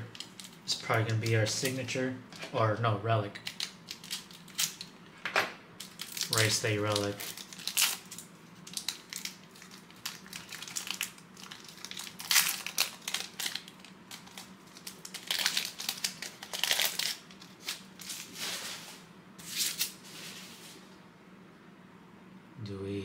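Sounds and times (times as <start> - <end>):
foil wrapper crinkling: 0.1 - 1.8, 3.4 - 5.0, 5.8 - 20.0.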